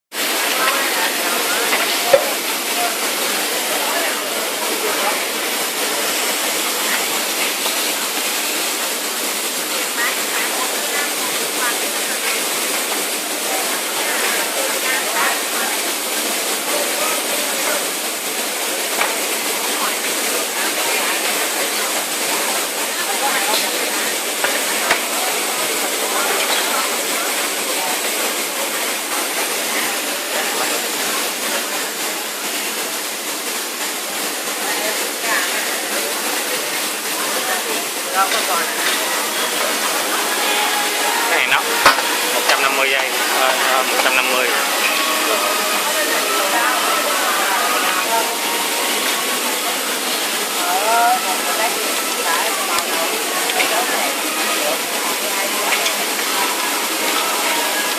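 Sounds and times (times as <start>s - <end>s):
welding arc hissing: 0.2s - 16.0s.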